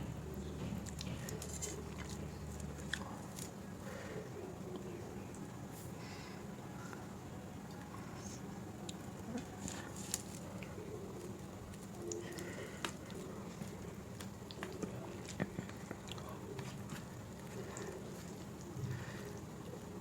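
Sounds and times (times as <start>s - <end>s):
person chewing food: 0.6s - 3.6s, 8.8s - 19.8s.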